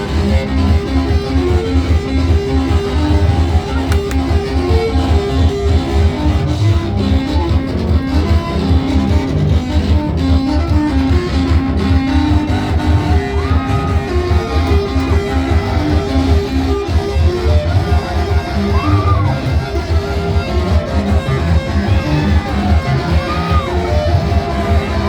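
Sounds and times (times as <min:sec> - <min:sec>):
heavy pulsing bass line: 0:00.0 - 0:25.0
praise music on guitars: 0:00.0 - 0:25.0.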